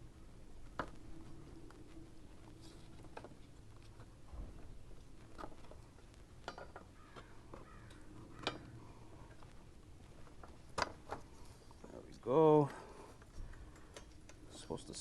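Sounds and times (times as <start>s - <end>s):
metal hardware clicks and knocks: 6.4s - 9.4s.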